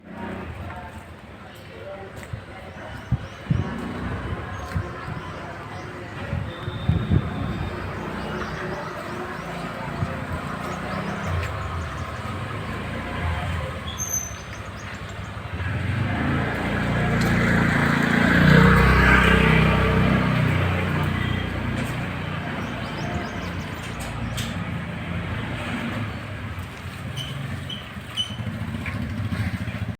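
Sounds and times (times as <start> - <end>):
vehicle passing by: 7.1 - 29.9.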